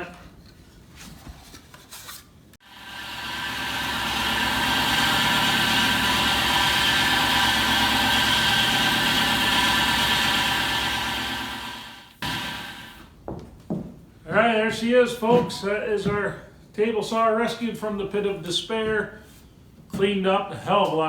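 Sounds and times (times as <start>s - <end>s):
table saw running: 2.6s - 13.1s.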